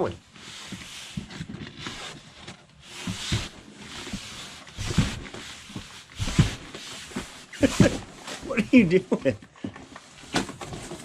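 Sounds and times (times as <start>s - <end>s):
cardboard rustling and scraping: 0.0s - 9.0s, 9.8s - 11.0s
soft bumps: 2.9s - 8.8s.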